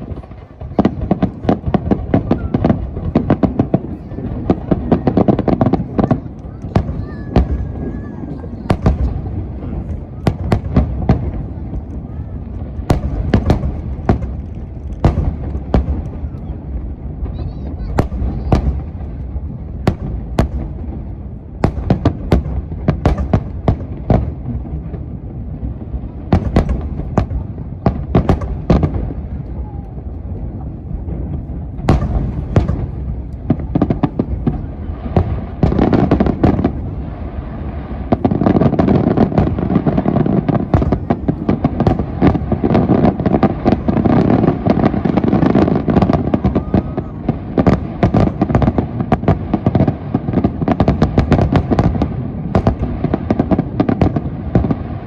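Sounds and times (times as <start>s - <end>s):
firework shells bursting: 8.5s - 16.6s, 17.2s - 25.2s, 26.3s - 37.1s.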